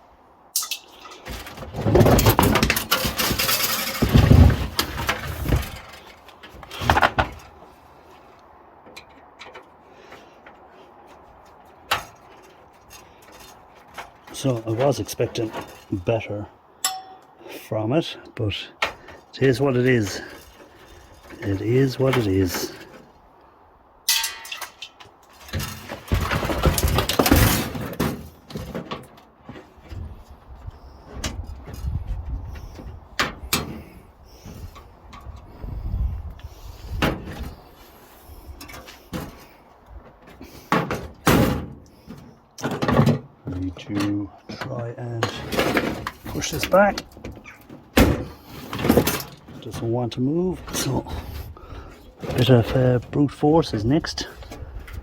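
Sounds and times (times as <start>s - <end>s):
computer parts clattering and rattling: 0.6s - 7.6s, 24.1s - 29.8s, 40.7s - 50.0s
computer parts clattering and scraping: 0.6s - 7.6s, 8.8s - 17.3s, 18.8s - 23.2s, 24.1s - 35.8s, 36.9s - 53.2s
sharp ringing hit: 16.8s - 17.4s.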